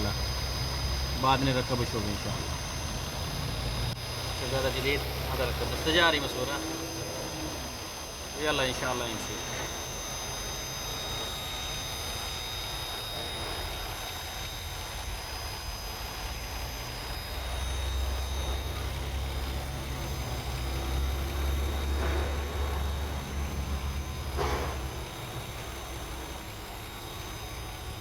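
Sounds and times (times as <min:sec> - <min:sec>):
car engine humming: 0:02.0 - 0:08.0.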